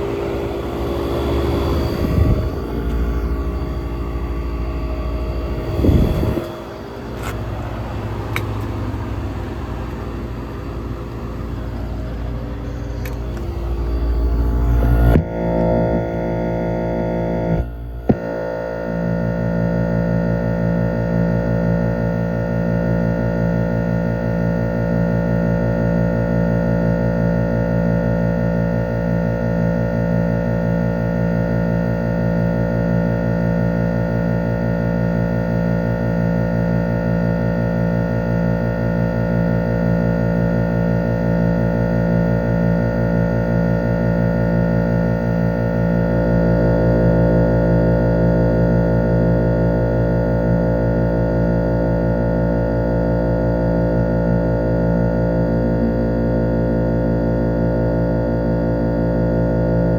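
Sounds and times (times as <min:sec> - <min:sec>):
air conditioner compressor humming: 0:00.0 - 0:59.9
click: 0:08.3 - 0:08.7, 0:13.0 - 0:13.5.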